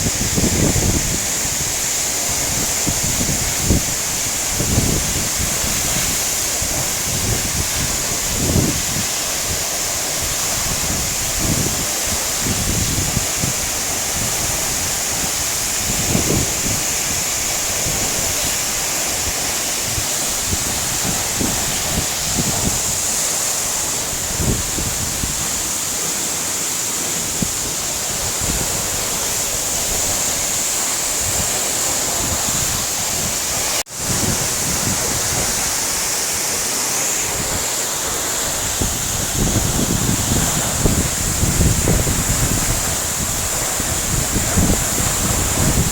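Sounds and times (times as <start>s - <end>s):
wind rumbling on microphone: 0.0s - 26.2s, 27.0s - 45.9s
waterfall roaring: 0.0s - 45.9s.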